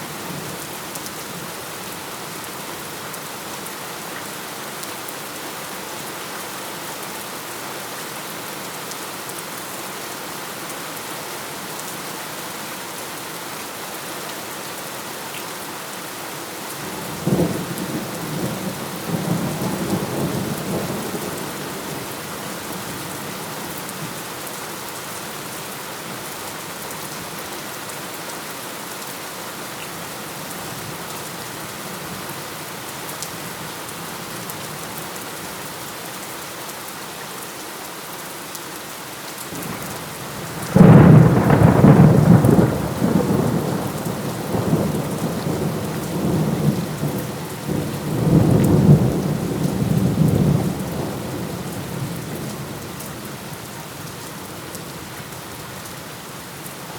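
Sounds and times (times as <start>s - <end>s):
heavy rain: 0.0s - 56.9s
thunder clap rumbling: 40.6s - 47.1s.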